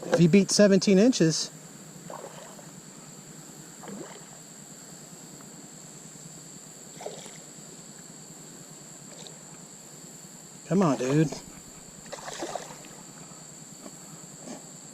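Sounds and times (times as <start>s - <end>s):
high-pitched insect drone: 0.1s - 14.9s
quiet water lapping: 1.5s - 14.8s
soft splashes against hull: 11.0s - 13.0s.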